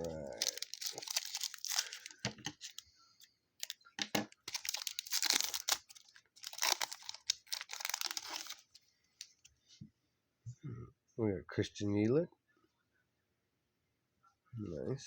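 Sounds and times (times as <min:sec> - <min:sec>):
wrapper tearing and crinkling: 0:00.0 - 0:02.8, 0:03.6 - 0:08.8.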